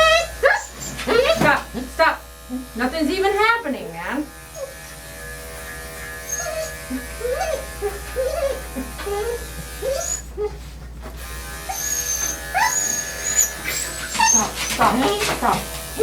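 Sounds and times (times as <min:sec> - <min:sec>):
dog whimpering: 0:00.0 - 0:01.6, 0:04.5 - 0:05.0, 0:06.0 - 0:10.8, 0:11.6 - 0:16.0
electric clippers running: 0:00.0 - 0:10.3, 0:11.1 - 0:16.0.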